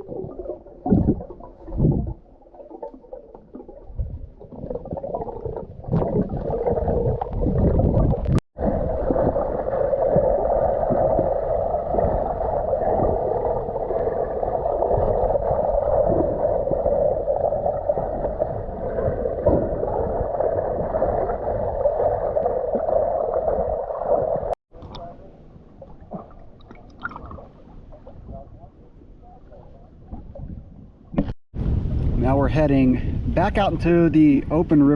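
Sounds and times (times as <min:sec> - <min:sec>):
splashing and paddling: 0:00.0 - 0:25.1
muffled underwater gurgling: 0:00.0 - 0:25.2.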